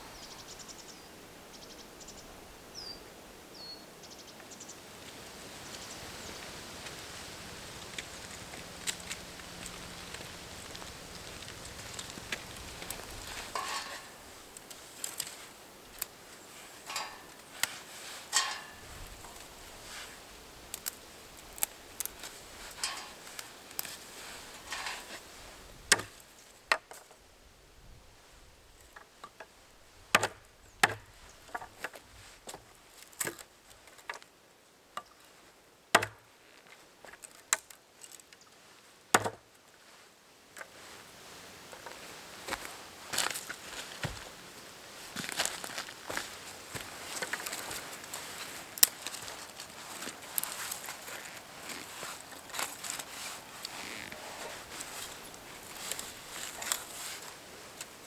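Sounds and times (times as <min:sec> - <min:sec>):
utensils scraping: 0:10.6 - 0:16.1, 0:16.7 - 0:25.4
blade chopping into wood: 0:30.2 - 0:31.1, 0:36.0 - 0:36.2.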